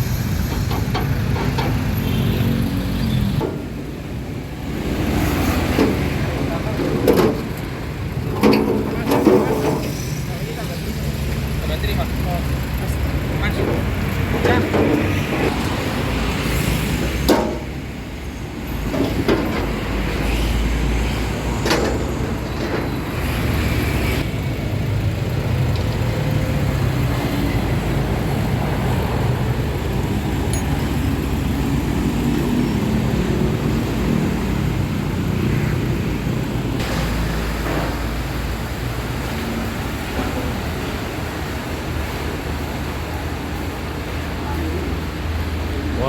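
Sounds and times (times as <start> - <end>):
vehicle engine rumbling: 0.0 - 46.0.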